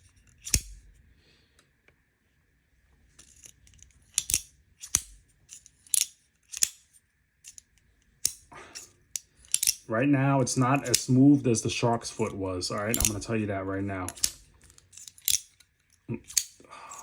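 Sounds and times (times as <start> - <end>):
folding knife clicking: 0.3 - 0.8, 3.3 - 9.9, 10.8 - 11.1, 12.8 - 13.2, 14.1 - 17.0.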